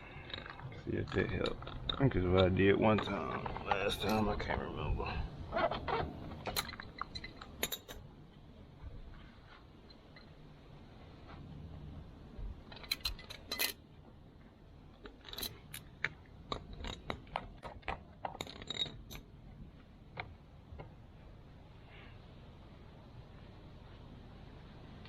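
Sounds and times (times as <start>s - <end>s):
small metal pieces clinking: 18.3s - 19.2s.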